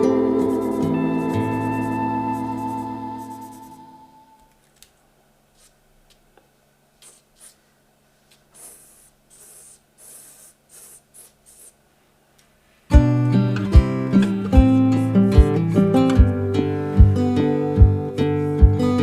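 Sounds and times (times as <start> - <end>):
acoustic guitar music: 0.0 - 4.4, 12.9 - 19.0
instrumental music: 0.0 - 4.5, 12.9 - 19.0
pencil scratching on paper: 0.4 - 3.8, 7.0 - 7.6, 8.5 - 11.8.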